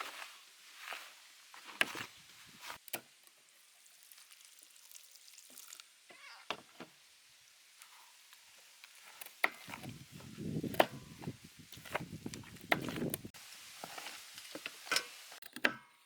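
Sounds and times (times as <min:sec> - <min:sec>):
hand mixing in flour rustling: 0:08.9 - 0:14.6.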